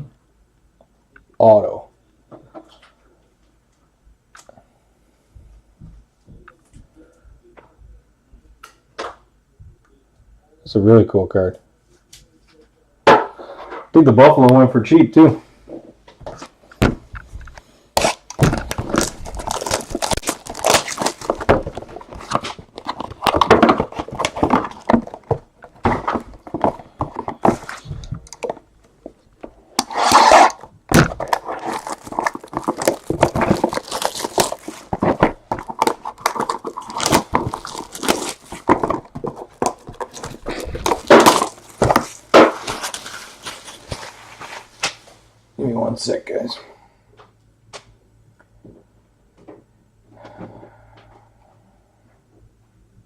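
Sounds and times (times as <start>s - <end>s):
trading cards and packaging rustling: 16.2s - 45.0s.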